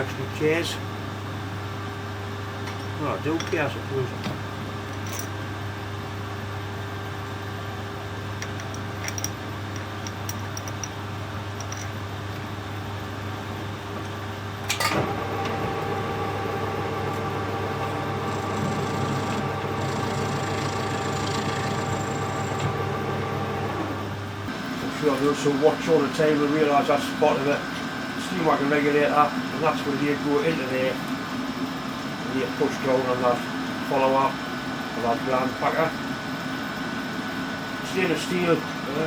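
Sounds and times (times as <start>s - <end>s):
motor humming: 14.9s - 24.9s.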